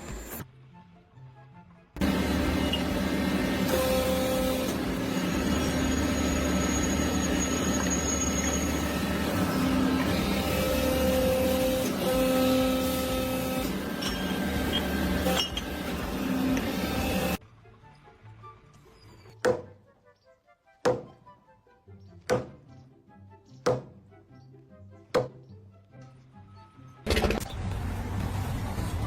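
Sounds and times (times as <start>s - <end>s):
machine running: 2.0s - 17.4s.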